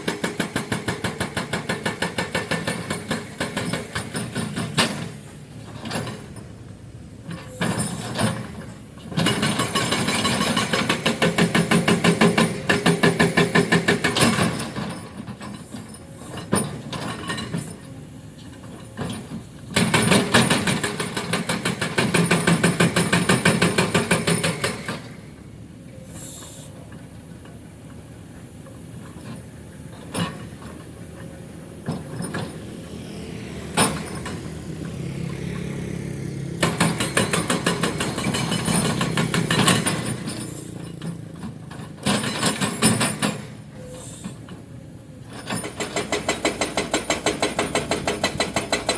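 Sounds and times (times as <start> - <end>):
hydraulic breaker hammering rock: 0.0 - 5.2, 9.2 - 17.8, 19.0 - 25.3, 36.6 - 41.2, 41.8 - 43.6, 45.3 - 48.9
diesel engine running: 30.6 - 46.0.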